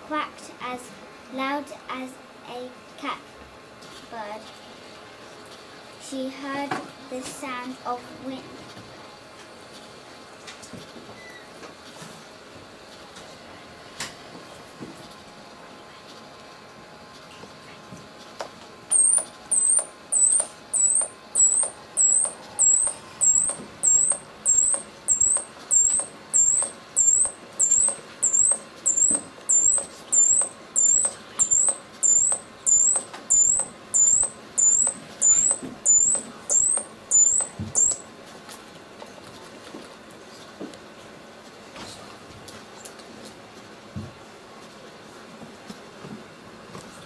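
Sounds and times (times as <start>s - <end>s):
very high chirp: 18.9s - 38.1s.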